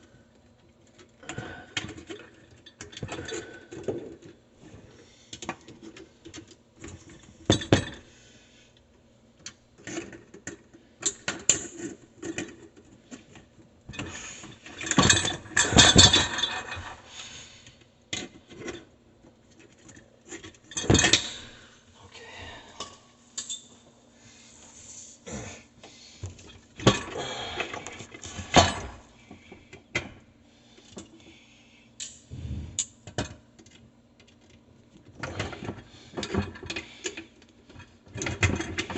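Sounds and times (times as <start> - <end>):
faint steady hum: 0.0 - 38.9
tools and parts clattering: 5.4 - 8.1, 9.4 - 17.0, 18.1 - 21.6, 23.4 - 23.7, 26.3 - 30.2, 32.8 - 38.9.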